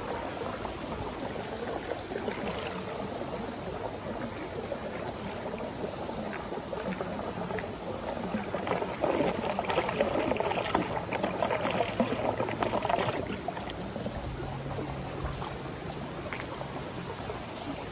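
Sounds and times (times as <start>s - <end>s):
running water splashing: 0.0s - 17.9s.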